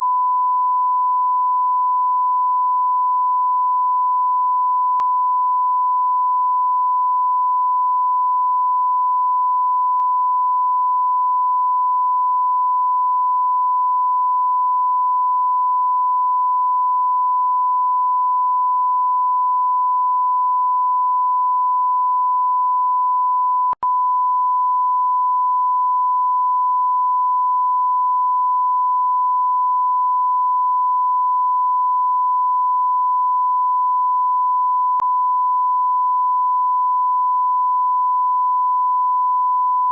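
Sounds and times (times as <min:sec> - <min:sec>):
censor bleep tone: 0:00.0 - 0:39.9
click: 0:23.7 - 0:23.9.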